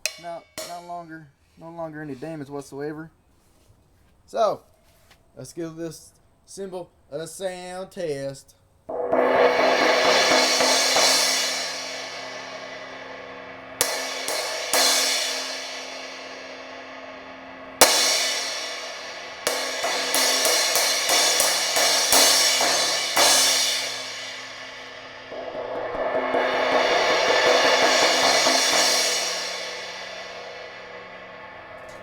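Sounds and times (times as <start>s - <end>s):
crash cymbal struck: 0.0s - 1.1s, 8.9s - 32.0s.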